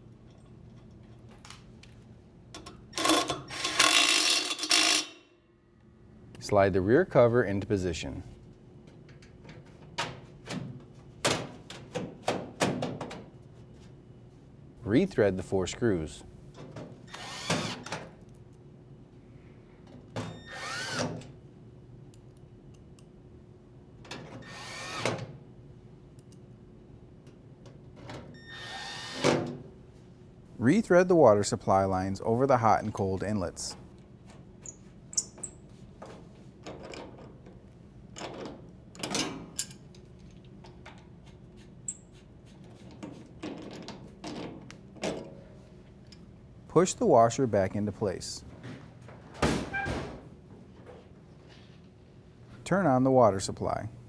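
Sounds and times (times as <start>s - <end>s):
drill driver running screws: 3.0s - 5.1s, 17.1s - 18.0s, 20.5s - 21.1s.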